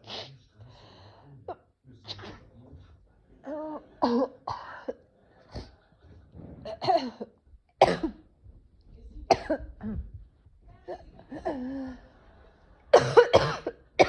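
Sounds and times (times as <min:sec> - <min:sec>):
woman coughing: 0:04.0 - 0:05.0, 0:06.7 - 0:08.2, 0:09.3 - 0:10.1, 0:12.9 - 0:14.0.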